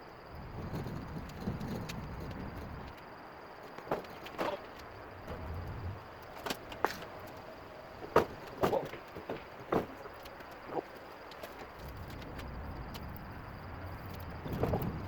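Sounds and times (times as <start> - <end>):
wheels rolling rumble: 0.0 - 15.0
wooden cradle knocks and clunks: 8.0 - 12.2.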